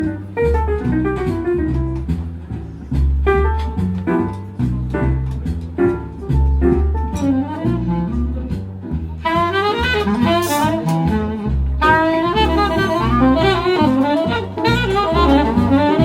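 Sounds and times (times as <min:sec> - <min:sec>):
walking double bass line: 0:00.0 - 0:16.0
saxophone melody: 0:07.1 - 0:08.4, 0:09.2 - 0:16.0.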